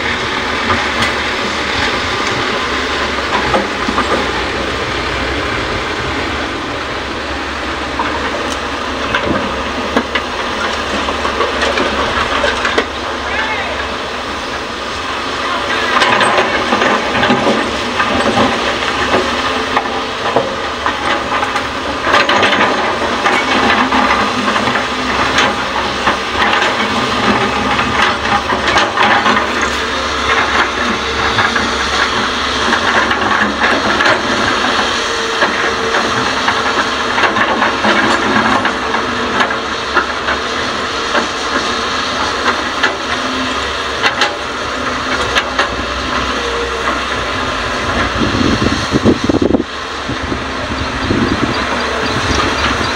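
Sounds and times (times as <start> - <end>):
excavator working: 0.0 - 52.9
hissing machine noise: 0.0 - 52.9
knocks and clatters: 15.9 - 47.0.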